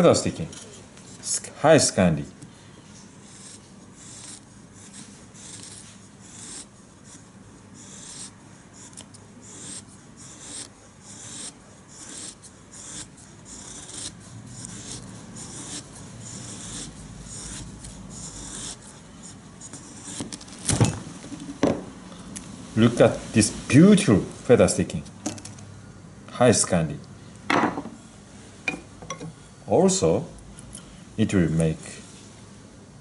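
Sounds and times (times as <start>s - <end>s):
knife scraping wood: 7.8s - 19.0s.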